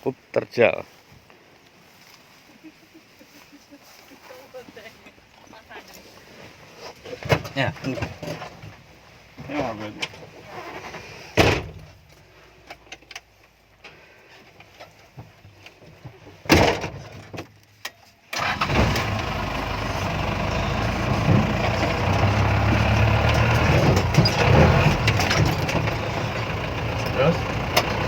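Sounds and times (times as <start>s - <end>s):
diesel engine under load: 18.3s - 28.0s.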